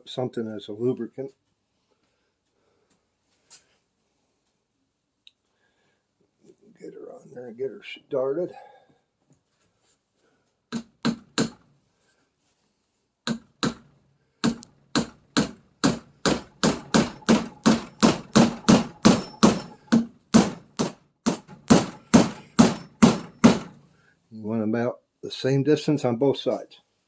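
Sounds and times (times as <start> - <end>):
hammer tapping metal bushing: 14.4 - 23.8.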